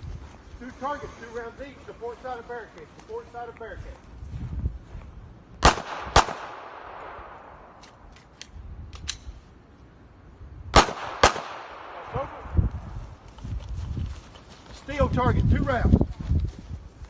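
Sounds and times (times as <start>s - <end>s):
handgun shots: 5.6s - 8.4s, 10.8s - 12.2s.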